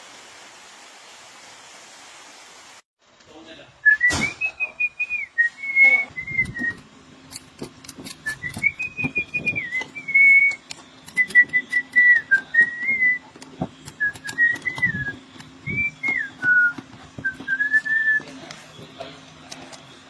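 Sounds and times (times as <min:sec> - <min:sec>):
person whistling a tune: 0:03.9 - 0:06.8, 0:08.2 - 0:13.3, 0:13.9 - 0:18.3
faint steady hum: 0:04.6 - 0:20.0
sharp clicks and taps: 0:06.4 - 0:18.6.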